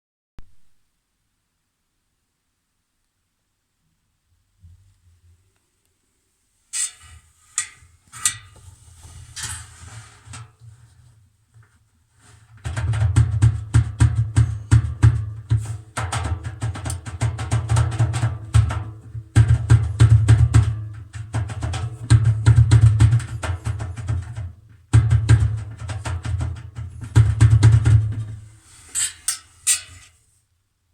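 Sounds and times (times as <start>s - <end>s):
washing machine drum knocking: 12.7s - 28.5s.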